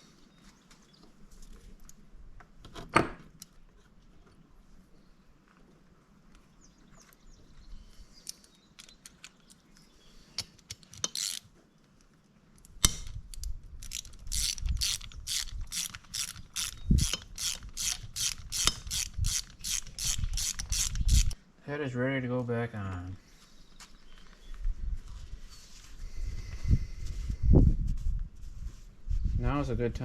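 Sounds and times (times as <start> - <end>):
metallic clicks of tools handled: 8.2 - 9.8, 10.4 - 11.5, 12.6 - 21.4
ratchet wrench clicking: 11.0 - 11.4, 13.0 - 21.4.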